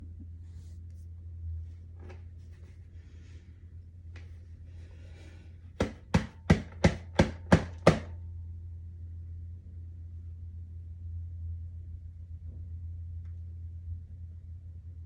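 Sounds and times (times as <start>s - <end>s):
low steady hum: 0.0s - 15.0s
faint rustling and handling: 0.3s - 5.7s
sharp knocks: 5.8s - 8.2s.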